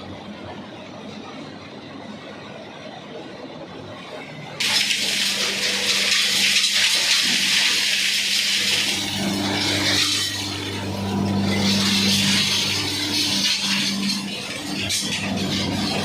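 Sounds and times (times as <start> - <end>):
washing machine water churning: 3.3 - 16.0
electric motor humming: 4.9 - 16.0.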